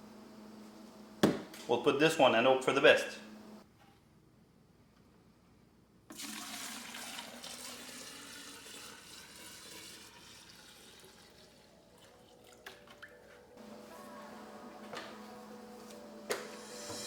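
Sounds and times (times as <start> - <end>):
liquid pouring and splashing: 6.1 - 13.3
background music: 10.7 - 17.0.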